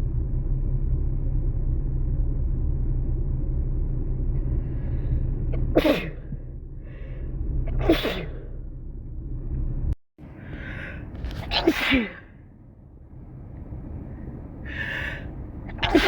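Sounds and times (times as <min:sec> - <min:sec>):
steady low rumble: 0:00.0 - 0:16.0
person sneezing: 0:05.6 - 0:06.2, 0:07.8 - 0:08.4, 0:11.4 - 0:12.3.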